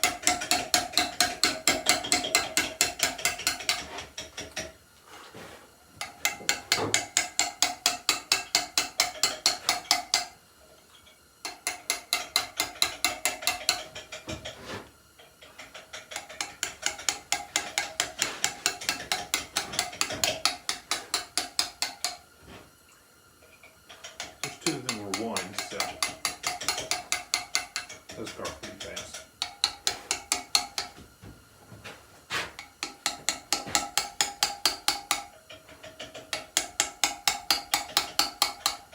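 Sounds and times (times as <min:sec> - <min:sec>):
hammer tapping chisel on stone: 0:00.0 - 0:04.7, 0:06.0 - 0:10.3, 0:16.0 - 0:22.2, 0:24.1 - 0:31.0, 0:32.6 - 0:35.3, 0:36.0 - 0:38.8.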